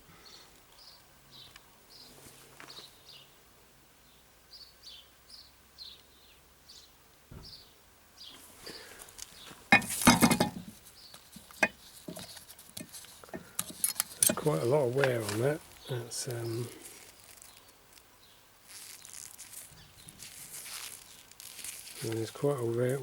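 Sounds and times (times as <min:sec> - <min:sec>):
metal parts knocking: 0:09.7 - 0:10.7, 0:11.6 - 0:14.5
metal clattering and clinking: 0:09.7 - 0:10.8, 0:11.4 - 0:14.6
small bird chirping: 0:15.6 - 0:22.2.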